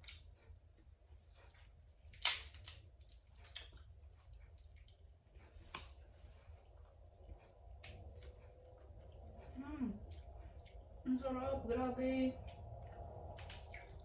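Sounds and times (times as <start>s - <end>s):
wet chewing and smacking: 0.0s - 11.2s, 12.4s - 14.0s
sharp cracks of shells: 2.1s - 2.8s.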